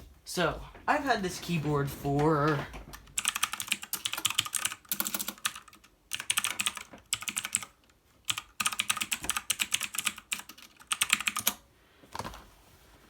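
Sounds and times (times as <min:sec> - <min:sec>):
clicky keyboard typing: 0:02.2 - 0:11.6.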